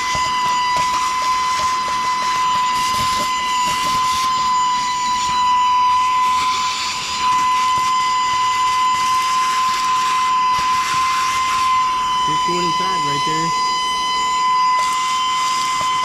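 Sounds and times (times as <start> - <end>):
vacuum cleaner motor whine: 0.0 - 16.0.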